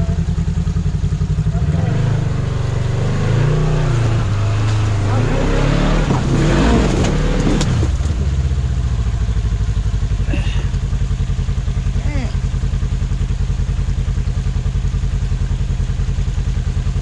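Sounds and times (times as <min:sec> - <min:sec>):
off-road vehicle engine revving: 0:00.0 - 0:17.0.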